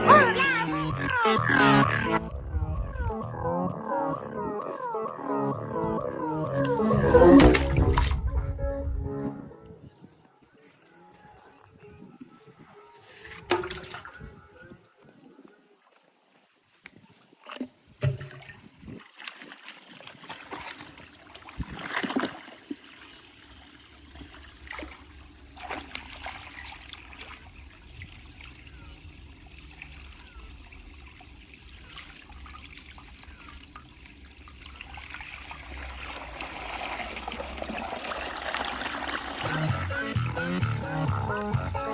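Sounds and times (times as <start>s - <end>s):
pulsing bass-heavy music: 0.0s - 9.5s, 39.4s - 41.9s
low bass hum: 0.0s - 9.6s, 39.4s - 41.9s
water trickling and splashing: 16.9s - 39.8s.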